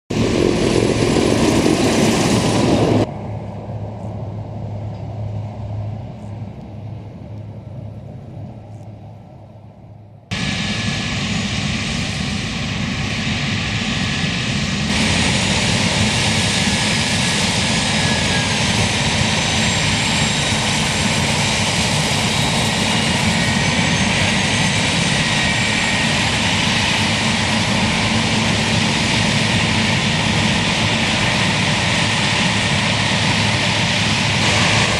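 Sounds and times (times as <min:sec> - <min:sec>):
heavy farm machinery running: 0:14.9 - 0:34.9.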